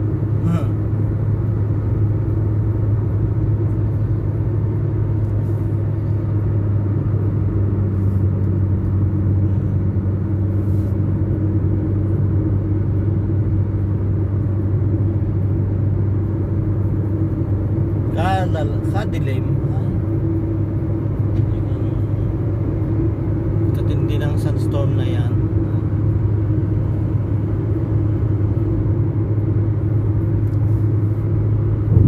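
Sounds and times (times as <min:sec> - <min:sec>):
higher hum: 0:00.0 - 0:01.2
vehicle engine running: 0:00.0 - 0:32.0.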